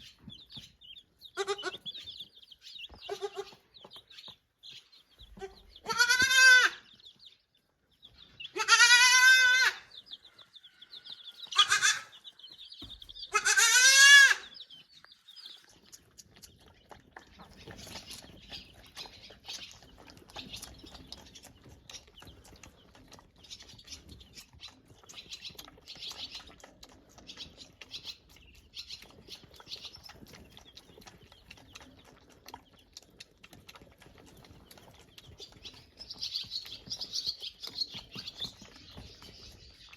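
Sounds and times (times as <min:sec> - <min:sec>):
goat kid bleating: 0:01.3 - 0:02.0, 0:03.0 - 0:03.6, 0:05.3 - 0:06.9, 0:08.5 - 0:09.9, 0:11.5 - 0:12.2, 0:13.3 - 0:14.5.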